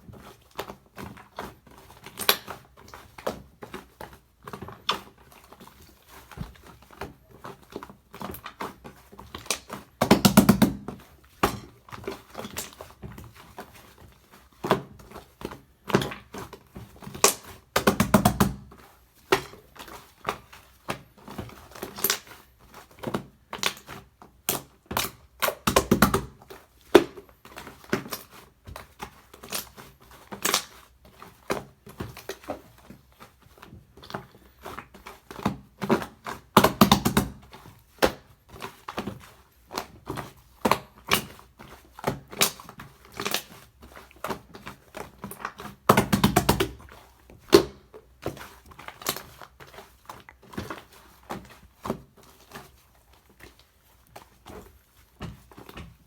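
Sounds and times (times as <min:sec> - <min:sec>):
slime squishing: 0:00.2 - 0:56.0.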